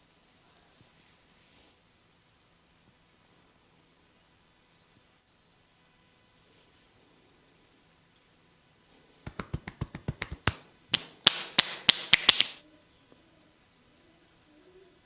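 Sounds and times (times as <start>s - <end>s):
hands slapping a head: 9.2s - 12.6s
hands tapping a head: 9.2s - 12.6s.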